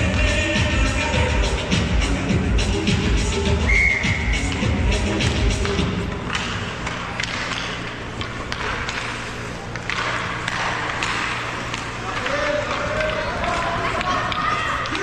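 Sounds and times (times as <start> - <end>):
low arena hum: 0.0 - 15.0
hockey sticks and puck clicking: 4.4 - 15.0.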